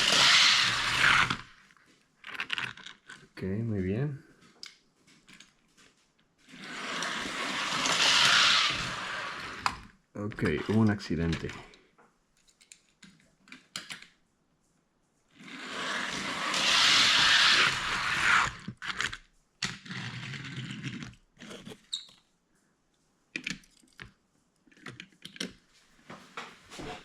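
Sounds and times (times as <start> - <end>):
toy cars rolling on plastic track: 0.0 - 3.4, 4.6 - 11.8, 15.3 - 21.8
toy cars clicking when handled: 6.8 - 11.8, 12.4 - 14.2, 15.4 - 21.2, 23.3 - 25.6.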